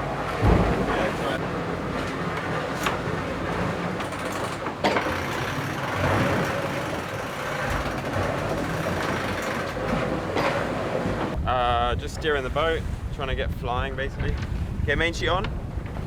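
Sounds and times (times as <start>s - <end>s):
water rushing around hull: 0.0s - 16.0s
wind noise: 11.0s - 16.0s.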